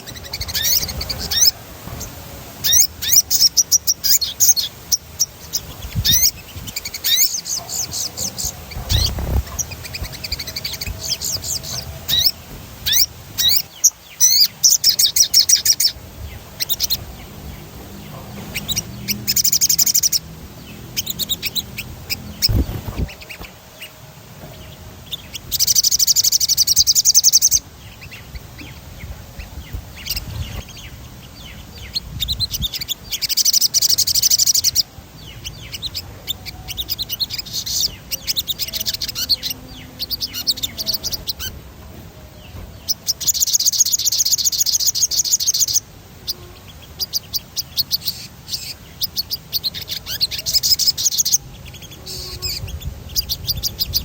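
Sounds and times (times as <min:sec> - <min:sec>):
songbird fast rolling trills: 0:00.0 - 0:41.6.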